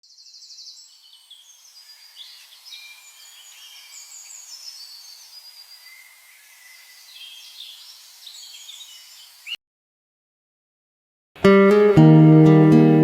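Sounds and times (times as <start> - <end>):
birds singing: 0.0 - 9.6
background hiss: 0.1 - 9.6.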